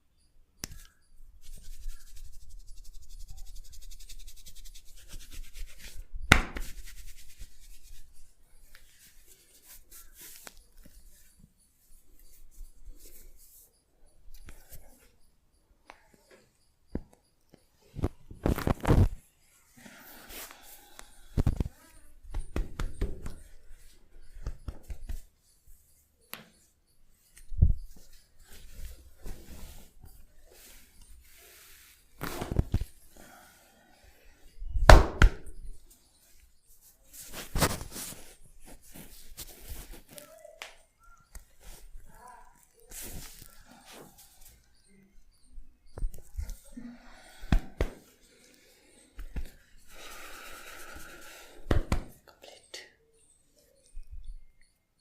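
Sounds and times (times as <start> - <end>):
soft steady hiss: 0.0 - 55.0
hands slapping in massage: 5.0 - 7.8, 22.3 - 23.6, 24.4 - 25.3, 32.2 - 32.9, 34.8 - 35.6, 47.5 - 48.1, 49.2 - 49.6, 51.6 - 52.2.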